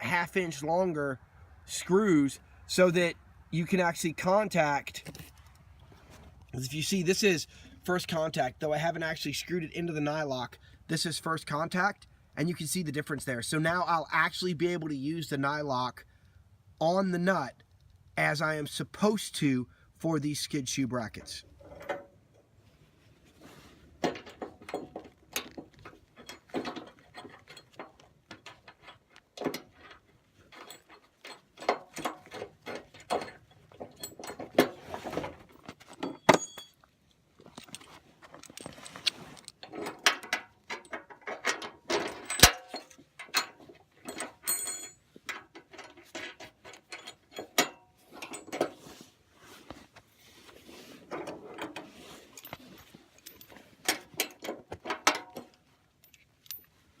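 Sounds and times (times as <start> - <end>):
metal tools clinking and knocking: 24.0 - 48.8, 51.1 - 56.8.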